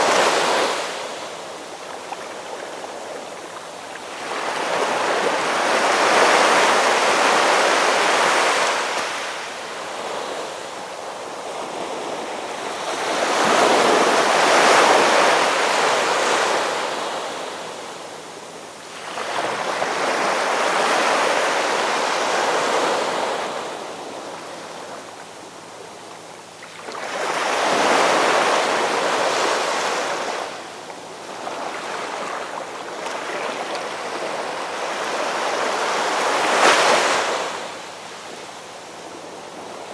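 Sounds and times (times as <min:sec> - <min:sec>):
ocean waves surging and washing: 0:00.0 - 0:39.9.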